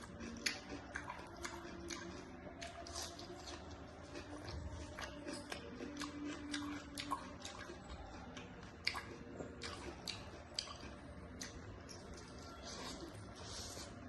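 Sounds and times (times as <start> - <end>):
person chewing food: 0.0 - 14.0
wet mouth clicks and smacks: 8.8 - 11.6.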